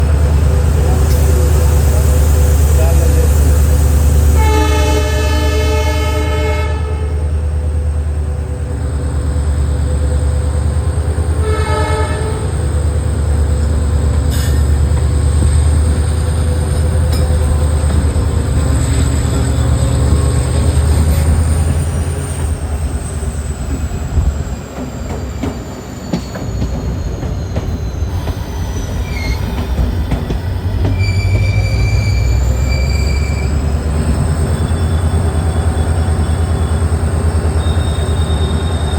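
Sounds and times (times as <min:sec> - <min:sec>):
diesel locomotive engine rumbling: 0:00.0 - 0:38.9
train coaches running over rails: 0:00.0 - 0:38.9
wheels squealing: 0:30.8 - 0:38.9.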